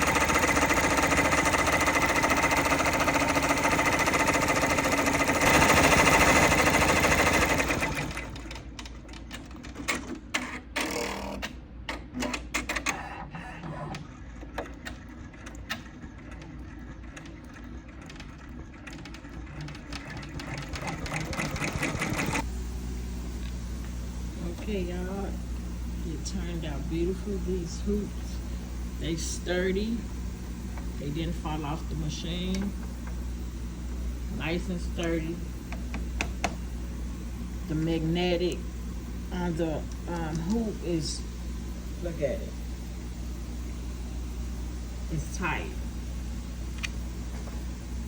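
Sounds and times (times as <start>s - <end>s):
embroidery machine needle clatter: 0.0s - 11.5s, 37.7s - 41.0s.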